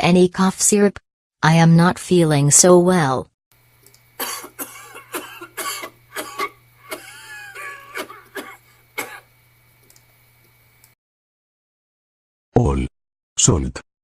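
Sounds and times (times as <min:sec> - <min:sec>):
man coughing: 0:04.2 - 0:09.3
rasping wheeze: 0:04.5 - 0:09.3.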